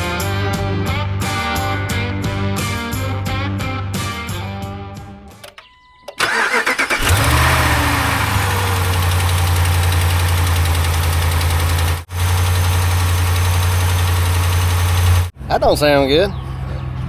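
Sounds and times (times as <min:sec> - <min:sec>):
diesel engine cranking and idling: 0:06.2 - 0:15.4.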